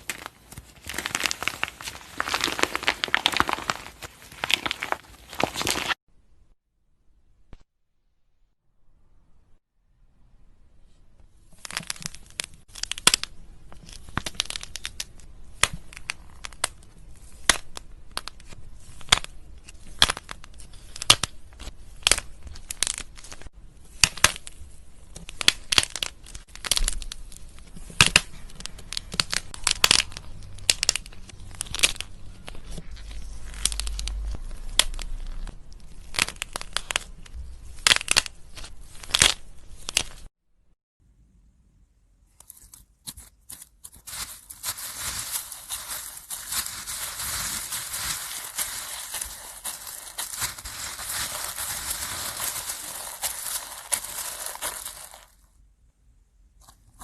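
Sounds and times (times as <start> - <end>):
slime crackling and popping: 0.0 - 6.0, 25.2 - 40.3, 44.1 - 55.4.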